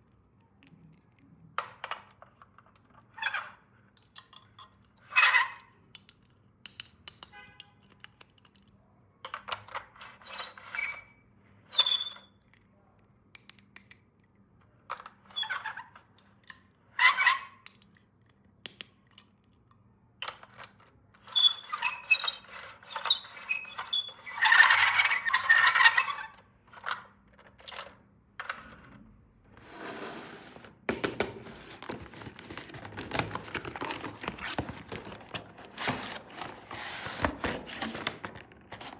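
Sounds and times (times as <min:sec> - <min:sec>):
hands rubbing plastic: 0:29.5 - 0:38.9
packaging crinkling: 0:31.5 - 0:38.2.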